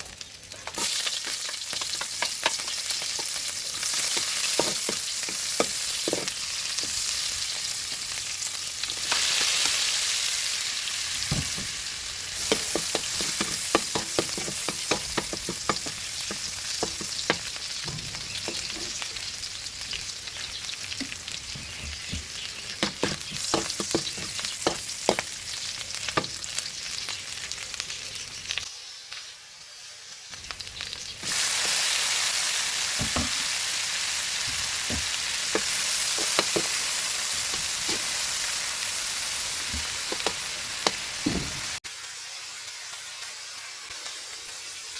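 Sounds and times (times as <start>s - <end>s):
food sizzling in oil: 0.0s - 44.9s
utensil scraping against pan: 2.2s - 7.0s, 12.4s - 19.1s, 35.5s - 38.2s.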